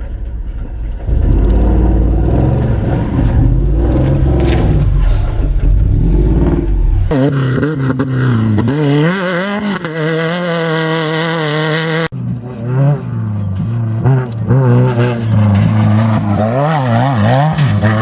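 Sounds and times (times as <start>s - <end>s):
race vehicle engines revving: 1.0s - 18.0s.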